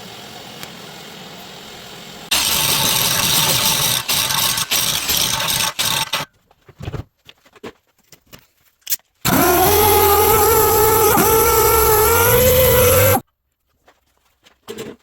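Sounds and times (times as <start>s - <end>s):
loud buzzing weld: 2.3s - 6.2s, 9.3s - 13.2s
crackling weld: 2.3s - 6.3s, 9.3s - 13.2s.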